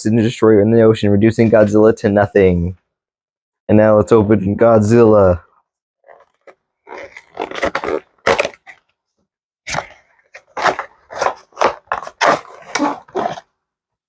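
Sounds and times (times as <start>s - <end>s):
packaging tearing and crinkling: 6.1s - 8.9s, 9.7s - 13.5s.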